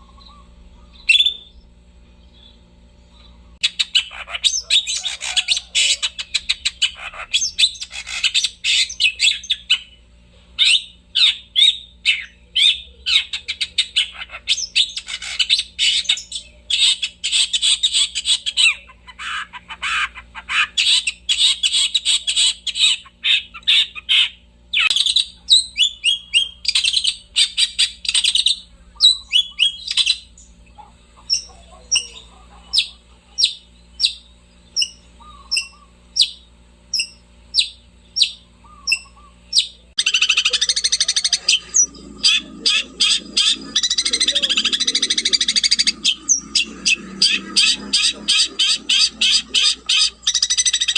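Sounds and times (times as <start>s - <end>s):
shrike singing scratchy chatter: 38.6s - 50.9s.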